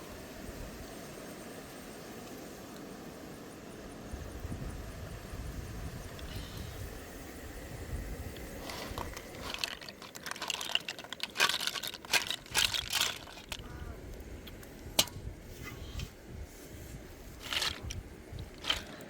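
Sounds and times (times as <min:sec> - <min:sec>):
sharp clicks and crackles: 0:08.4 - 0:15.2, 0:17.4 - 0:19.0.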